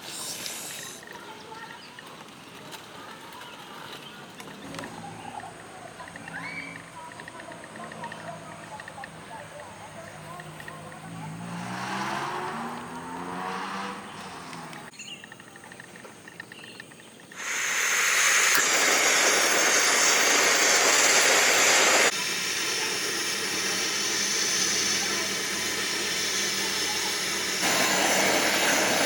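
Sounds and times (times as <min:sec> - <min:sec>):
loud hissing rush: 0:00.0 - 0:01.3, 0:17.4 - 0:29.0.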